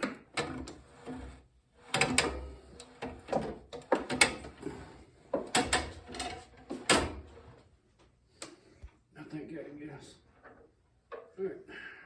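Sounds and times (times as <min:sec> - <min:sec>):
drill press metal clunks and rattles: 0:01.8 - 0:04.7, 0:05.3 - 0:07.4.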